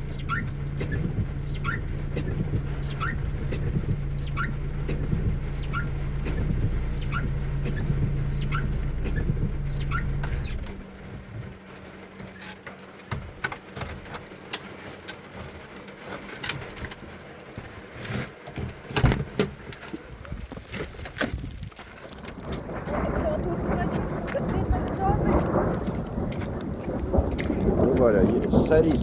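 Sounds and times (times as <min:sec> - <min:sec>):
short chirps: 0:00.0 - 0:10.7
vehicle engine idling: 0:00.0 - 0:29.0.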